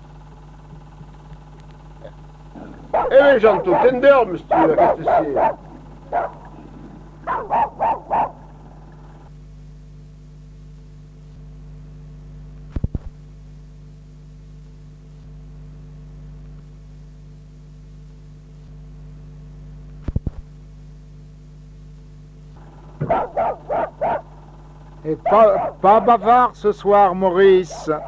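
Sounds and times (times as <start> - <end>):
steady low hum: 0.0 - 28.0
dog barking: 2.6 - 8.7, 23.0 - 24.4, 25.2 - 26.3, 27.6 - 28.0.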